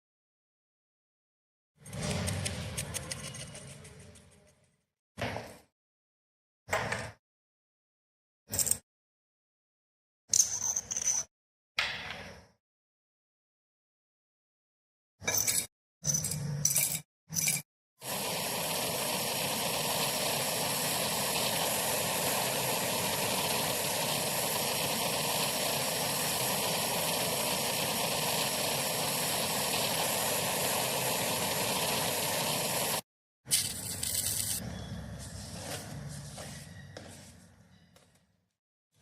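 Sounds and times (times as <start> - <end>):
clipped work sounds: 1.8 - 4.6.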